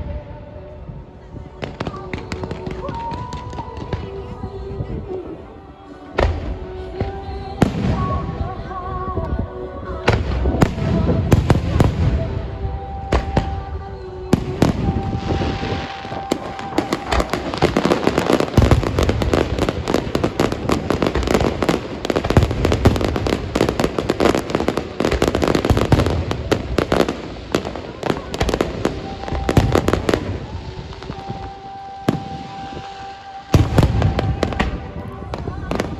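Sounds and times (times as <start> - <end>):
fireworks bangs and booms: 1.6 - 4.3, 6.2 - 8.6, 10.0 - 35.9
fireworks crackling: 1.6 - 4.3, 10.0 - 35.9.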